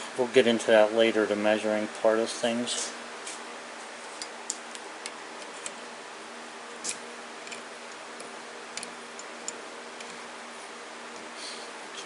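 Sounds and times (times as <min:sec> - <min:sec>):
steady low hum and hiss: 0:00.0 - 0:12.0.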